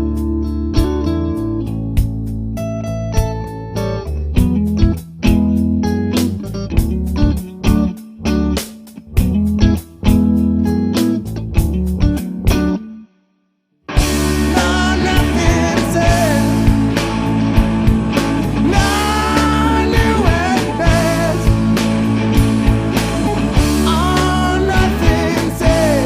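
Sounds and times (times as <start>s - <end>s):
rock band playing: 0.0s - 12.9s, 13.9s - 26.0s
sliding lead guitar line: 2.6s - 13.0s, 13.9s - 26.0s.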